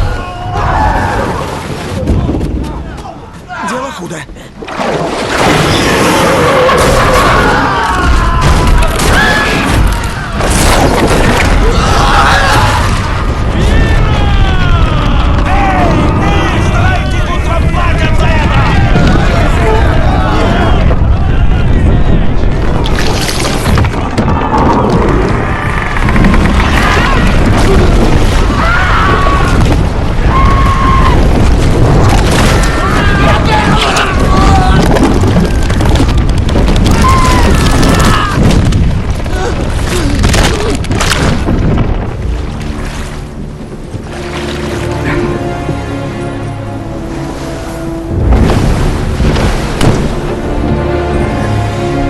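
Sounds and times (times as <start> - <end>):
deep booming and crashing: 4.8 - 42.6, 48.1 - 50.8
orchestral music: 42.1 - 52.0.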